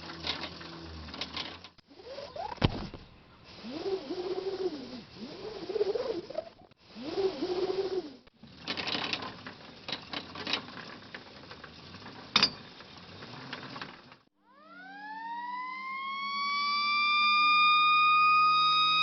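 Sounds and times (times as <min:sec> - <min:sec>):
fire truck siren wailing: 0:14.4 - 0:19.0
short wavering tone: 0:14.4 - 0:19.0.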